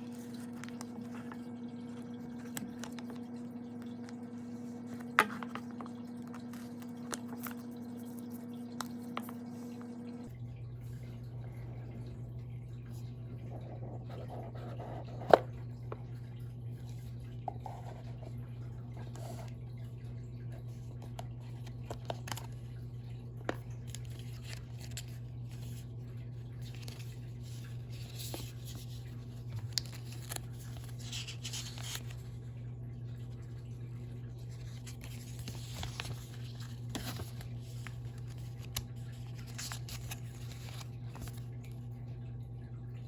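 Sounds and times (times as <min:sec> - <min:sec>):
steady low hum: 0:00.0 - 0:43.0
packaging rustling and scraping: 0:34.7 - 0:41.4.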